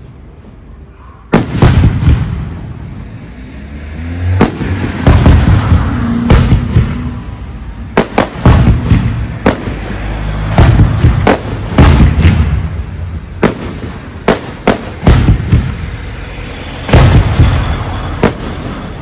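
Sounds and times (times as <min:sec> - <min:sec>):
fireworks shells bursting: 0:07.9 - 0:19.0.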